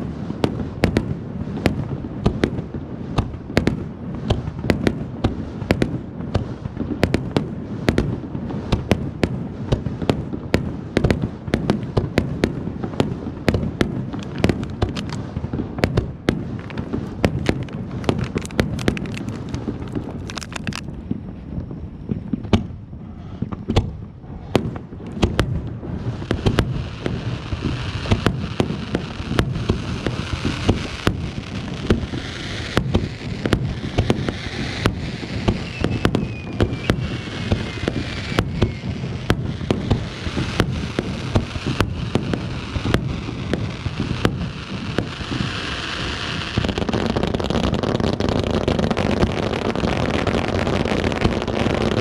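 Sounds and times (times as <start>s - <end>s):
crackling hiss: 0.0s - 52.0s
fireworks popping and banging: 0.0s - 52.0s
faint falling whistle: 35.6s - 37.0s.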